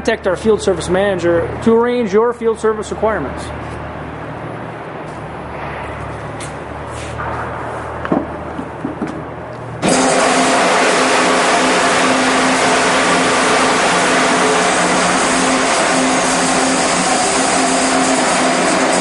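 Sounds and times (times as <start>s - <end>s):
impeller whirring: 7.4s - 19.0s.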